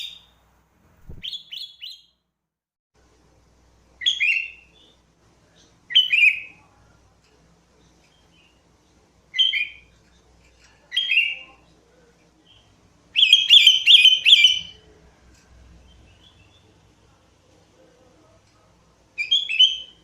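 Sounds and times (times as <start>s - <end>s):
bulbul singing: 1.0s - 2.2s.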